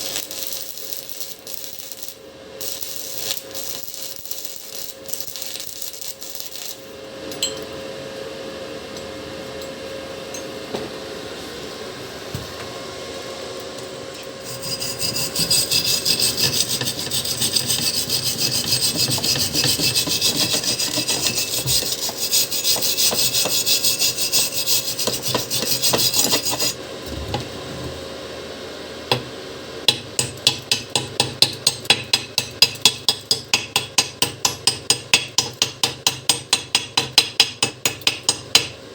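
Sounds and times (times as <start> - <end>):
welding arc crackling: 0.0 - 7.0.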